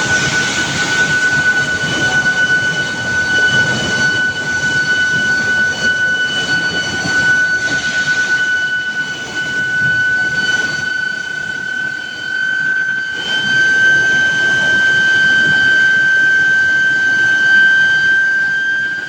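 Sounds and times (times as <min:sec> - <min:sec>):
furnace high whine: 0:00.0 - 0:19.0.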